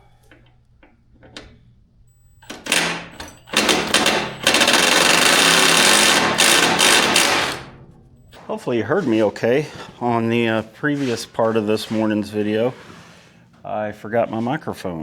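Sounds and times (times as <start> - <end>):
impact wrench hammering: 2.4 - 8.4.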